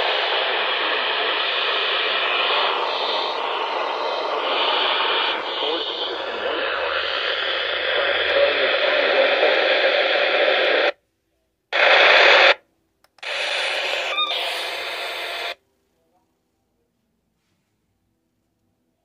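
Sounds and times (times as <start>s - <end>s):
radio static hiss: 0.0s - 11.0s, 11.7s - 12.6s, 13.2s - 15.6s.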